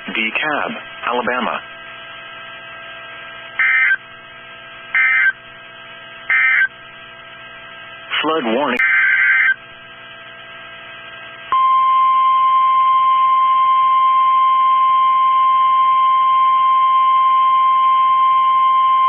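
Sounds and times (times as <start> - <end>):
faint broadcast hum: 0.0 - 19.0
steady warning alarm tone: 3.6 - 4.0, 4.9 - 5.4, 6.3 - 6.8, 8.7 - 9.6.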